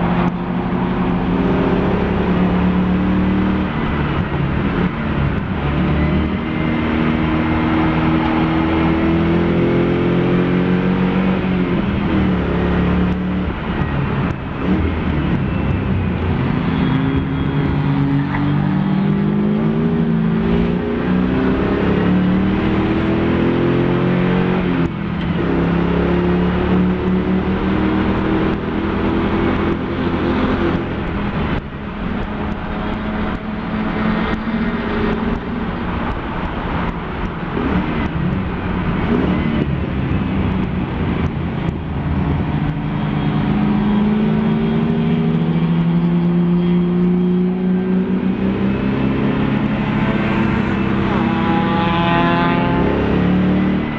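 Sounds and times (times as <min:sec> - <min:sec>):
race car engine pulling hard: 0:41.1 - 0:53.9.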